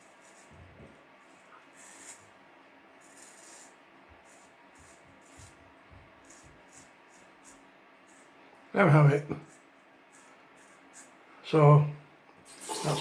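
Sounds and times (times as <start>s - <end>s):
razor scraping stubble: 0.0s - 0.6s, 1.2s - 2.4s, 3.0s - 5.6s, 6.2s - 8.4s, 9.4s - 11.2s.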